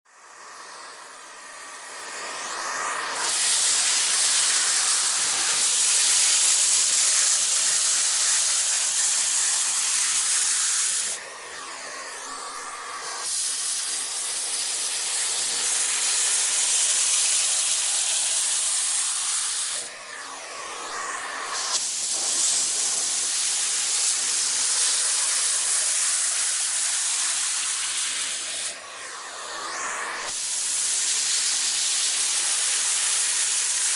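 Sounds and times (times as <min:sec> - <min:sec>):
vacuum cleaner running: 0:00.1 - 0:33.9.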